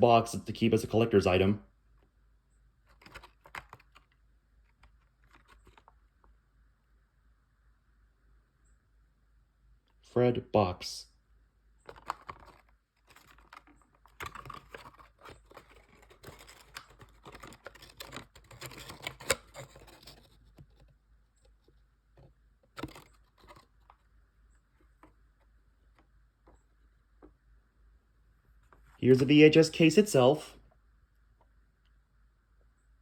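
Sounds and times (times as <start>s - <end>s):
packaging rustling: 2.9s - 6.0s, 11.9s - 20.9s, 22.2s - 24.1s.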